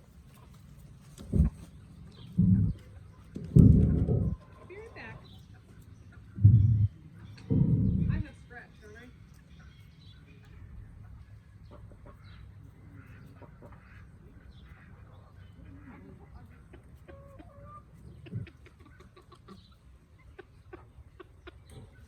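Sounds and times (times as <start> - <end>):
low steady rumble: 0.0 - 9.4
chickens clucking: 0.0 - 22.0.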